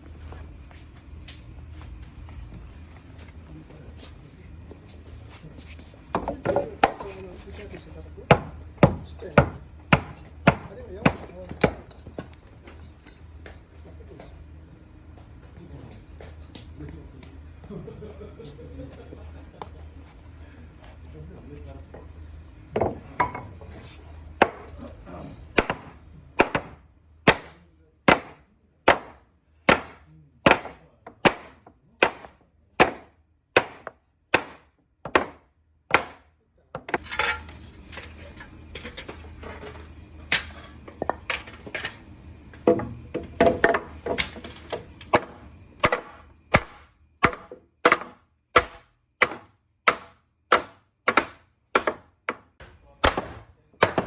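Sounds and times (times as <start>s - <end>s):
wooden mallet striking timber: 8.3s - 11.8s, 25.6s - 36.2s, 45.1s - 54.0s.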